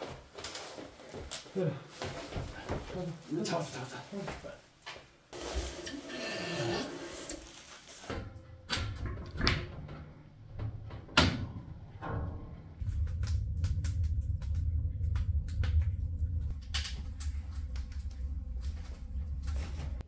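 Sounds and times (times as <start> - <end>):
steady low rumble: 10.1 - 20.0.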